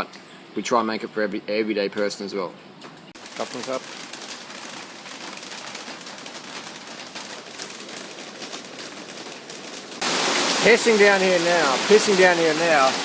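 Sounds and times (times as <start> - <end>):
heavy rain falling: 3.2 - 13.0.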